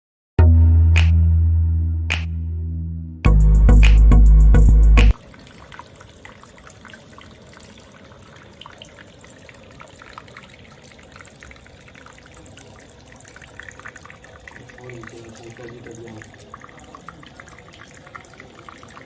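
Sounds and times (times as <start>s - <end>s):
fountain water trickling: 5.1s - 19.0s
water drips and splashes: 5.1s - 19.0s.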